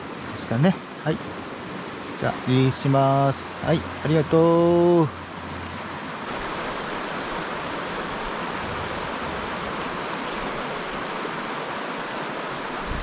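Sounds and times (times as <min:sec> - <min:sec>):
stream water rushing: 0:00.0 - 0:13.0.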